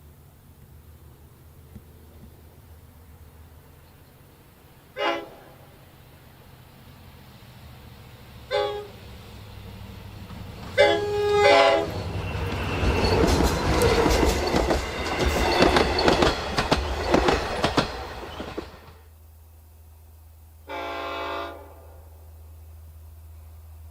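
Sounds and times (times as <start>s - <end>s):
locomotive air horn: 4.9s - 5.8s, 8.5s - 9.1s, 10.8s - 12.1s, 20.6s - 22.2s
train wheels clattering: 9.6s - 19.0s.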